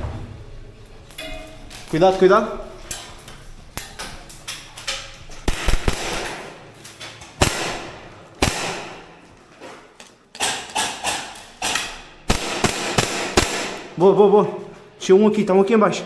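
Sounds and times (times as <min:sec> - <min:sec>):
airsoft gun shots: 0:05.4 - 0:06.6, 0:07.4 - 0:09.3, 0:10.4 - 0:14.0.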